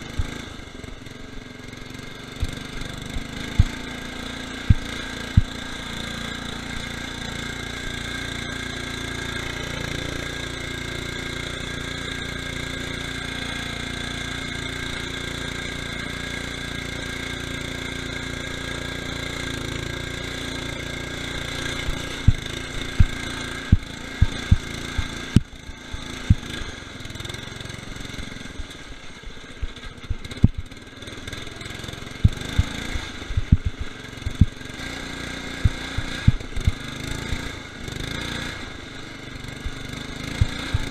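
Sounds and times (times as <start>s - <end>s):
lawn tractor engine running: 0.0s - 40.9s
sharp low thumps: 4.7s - 5.6s, 23.0s - 25.1s, 30.1s - 30.7s, 33.4s - 34.6s.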